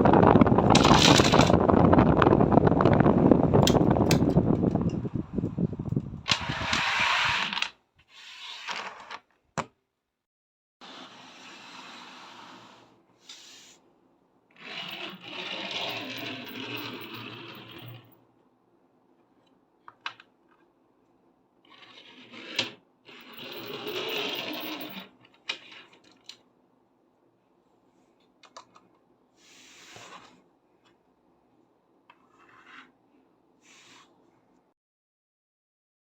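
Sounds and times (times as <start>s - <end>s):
fan blowing: 0.0s - 6.7s.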